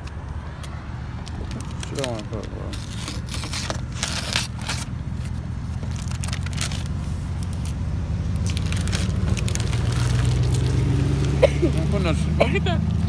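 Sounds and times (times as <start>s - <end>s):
crackling crinkling clicks: 0.0s - 4.9s, 8.4s - 11.4s.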